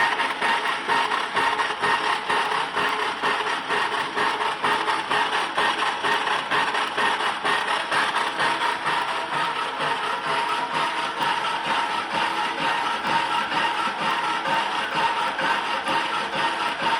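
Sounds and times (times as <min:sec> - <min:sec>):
faint lathe whine: 0:00.0 - 0:16.9
metal lathe running: 0:00.0 - 0:16.9.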